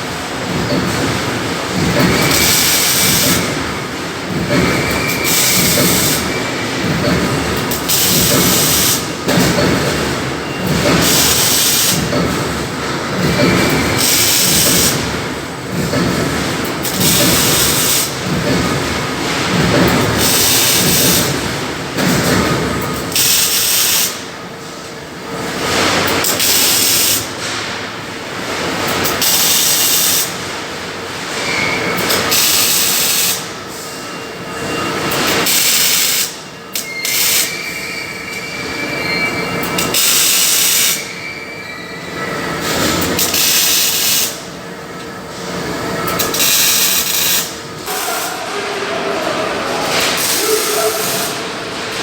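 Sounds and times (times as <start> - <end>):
welding arc crackling and hissing: 46.3 - 48.4, 49.9 - 51.5.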